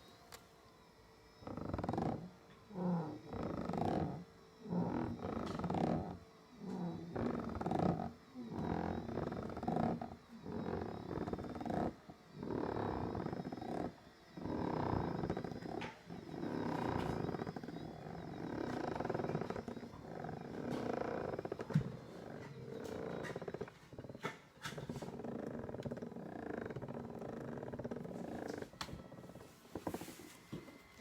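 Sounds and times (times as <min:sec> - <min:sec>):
massage mechanism rumbling: 0:00.0 - 0:31.0.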